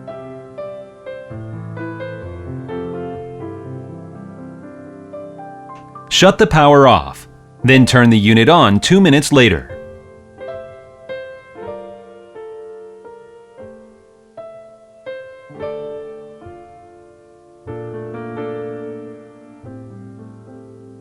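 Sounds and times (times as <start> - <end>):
piano music: 0.0 - 21.0.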